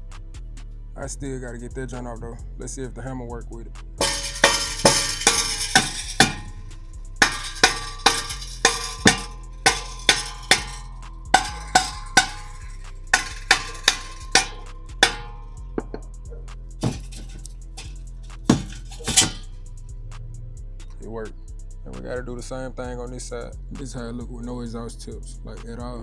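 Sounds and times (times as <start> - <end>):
hammer clanking on metal: 4.0 - 15.6, 16.8 - 19.5.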